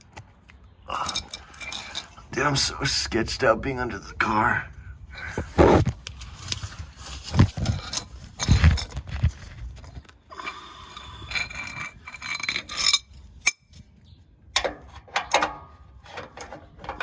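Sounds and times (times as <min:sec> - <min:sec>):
hand tools scraping metal: 0:01.0 - 0:02.2, 0:10.4 - 0:13.8.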